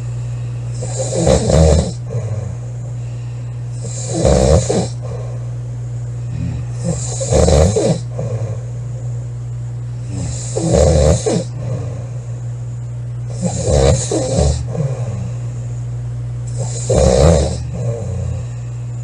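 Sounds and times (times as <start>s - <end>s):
steady low hum: 0.0s - 19.0s
woman snoring loudly: 0.8s - 2.6s, 3.8s - 5.4s, 6.3s - 8.7s, 10.0s - 12.2s, 13.3s - 15.4s, 16.5s - 18.6s.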